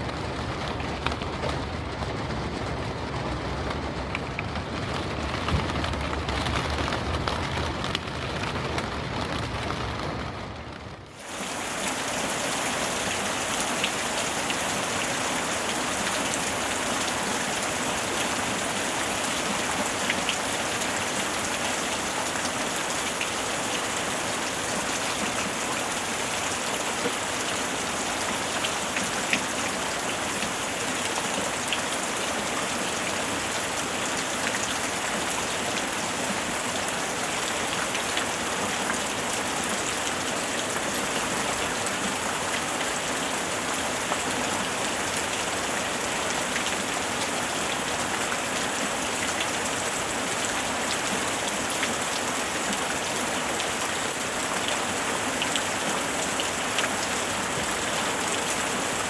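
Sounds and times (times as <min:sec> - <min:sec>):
steady heavy rain: 0:00.0 - 0:59.0
sharp rain drop ticks: 0:04.0 - 0:09.7.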